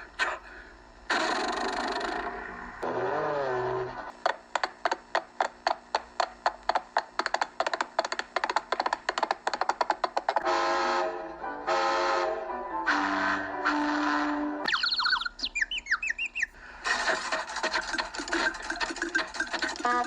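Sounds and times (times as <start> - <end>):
sharp taps: 4.2 - 10.4
wavering warble: 14.6 - 16.6.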